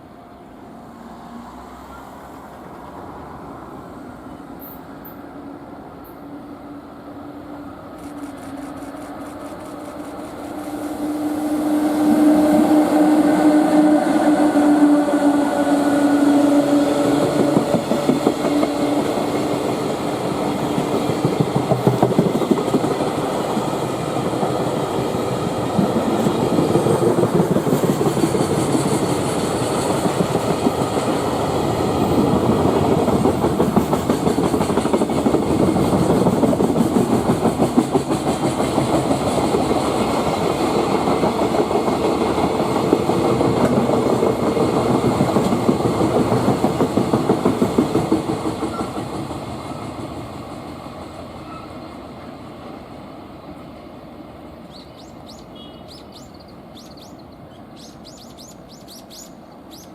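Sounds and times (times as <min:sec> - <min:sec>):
train wheels clattering over rails: 0:07.9 - 0:51.8.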